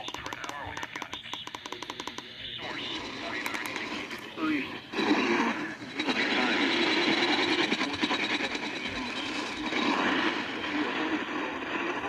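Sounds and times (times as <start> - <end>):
radio static hiss with crackle: 0.0 - 12.0.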